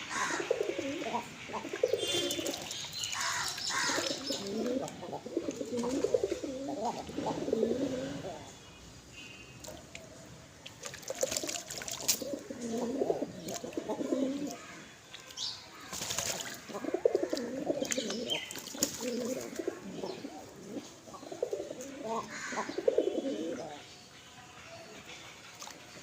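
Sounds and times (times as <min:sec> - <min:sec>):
pigeons cooing: 0:00.0 - 0:08.5, 0:11.0 - 0:14.9, 0:16.2 - 0:23.8.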